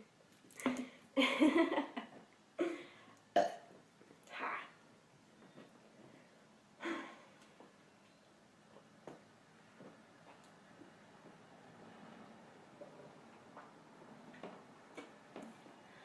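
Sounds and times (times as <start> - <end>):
woman burping: 2.6 - 3.7.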